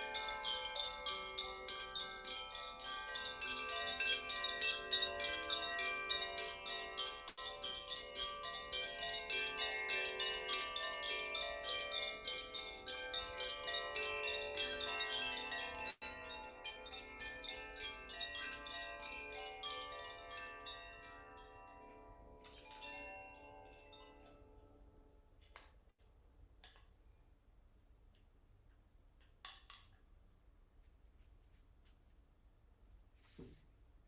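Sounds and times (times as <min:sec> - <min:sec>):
chimes ringing: 0:00.0 - 0:24.7.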